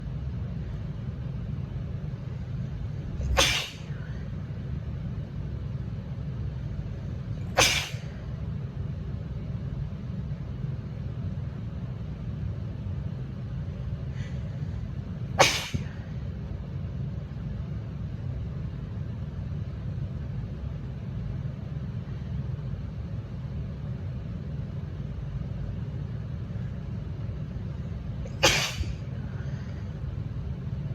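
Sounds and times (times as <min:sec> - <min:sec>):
steady low rumble: 0:00.0 - 0:30.9
woman sneezing: 0:03.2 - 0:04.2, 0:07.6 - 0:08.2, 0:15.4 - 0:16.0, 0:28.3 - 0:29.1.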